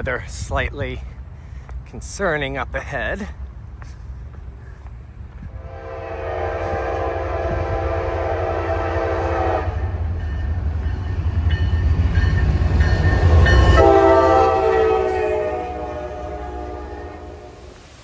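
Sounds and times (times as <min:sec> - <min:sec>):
train horn chord: 0:05.5 - 0:10.4, 0:13.1 - 0:17.7.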